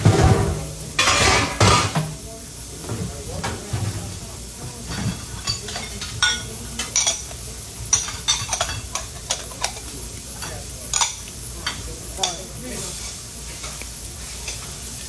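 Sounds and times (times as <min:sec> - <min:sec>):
food frying sizzle: 0:00.0 - 0:15.0
metal utensils clinking on cookware: 0:00.0 - 0:15.0.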